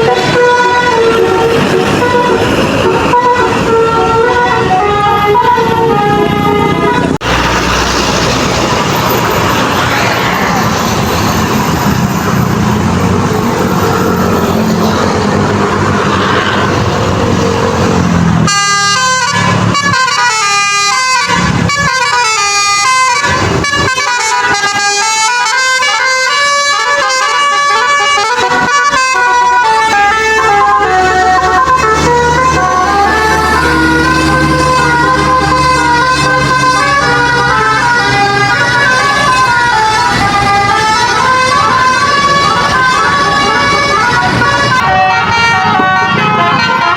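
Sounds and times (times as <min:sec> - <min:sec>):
bus horn playing a melody: 0:00.0 - 0:07.4, 0:18.4 - 0:46.9.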